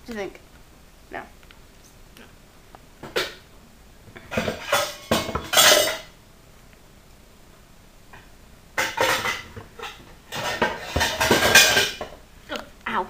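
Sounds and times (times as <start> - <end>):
metal pots clattering: 4.2 - 6.2, 8.8 - 12.2.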